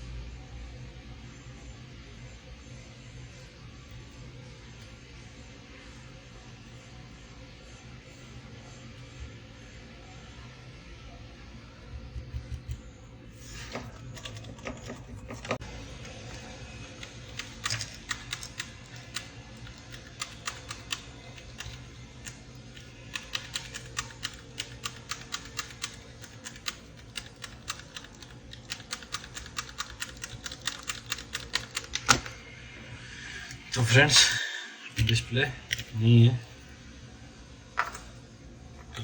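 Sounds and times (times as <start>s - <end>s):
faint low hum: 0.0s - 39.0s
keyboard typing clicks: 23.2s - 32.3s.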